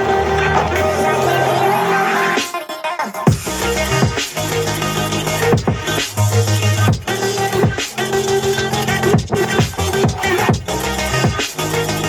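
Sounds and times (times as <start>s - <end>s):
electronic dance music: 0.0s - 12.0s
deep bass drops sliding down: 3.3s - 12.0s.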